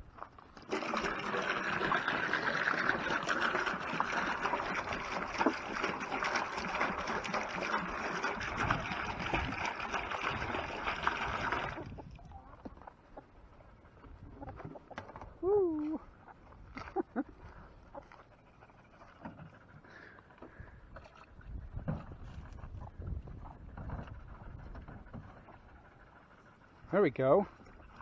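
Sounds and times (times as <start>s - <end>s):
water pouring into trough: 0.0s - 12.3s.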